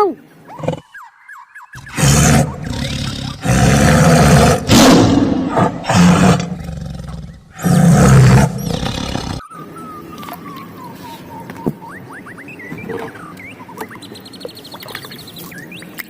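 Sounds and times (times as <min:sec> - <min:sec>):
tiger roaring: 0:01.8 - 0:09.4.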